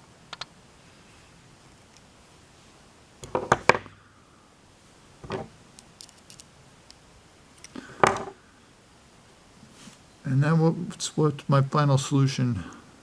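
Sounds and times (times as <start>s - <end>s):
metal clicks and clinks: 6.0s - 6.5s.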